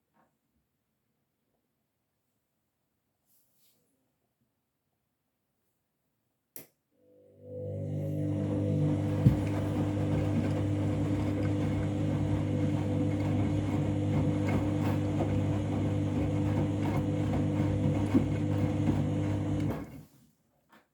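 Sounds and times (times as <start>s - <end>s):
washing machine drum motor humming: 7.4s - 20.0s.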